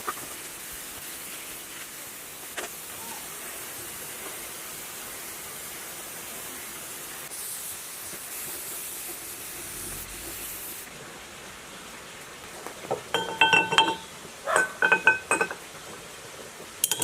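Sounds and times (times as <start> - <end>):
hissing spray: 0.0 - 11.0.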